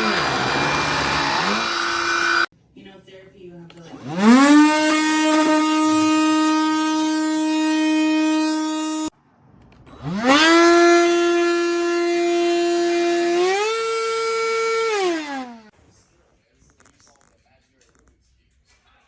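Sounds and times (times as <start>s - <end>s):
handheld vacuum motor whining: 0.0s - 2.5s, 3.7s - 9.1s, 9.8s - 15.7s.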